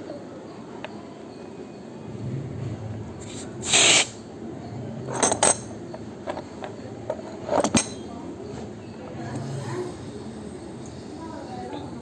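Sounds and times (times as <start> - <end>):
gas hiss: 3.2 - 4.2
light metallic clinks: 5.1 - 10.2.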